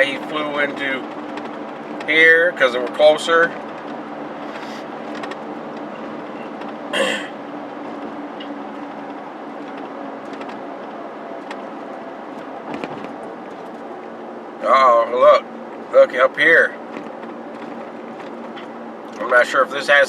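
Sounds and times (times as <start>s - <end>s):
car road and engine hum: 0.0s - 20.0s
cough-like sound: 7.0s - 7.4s.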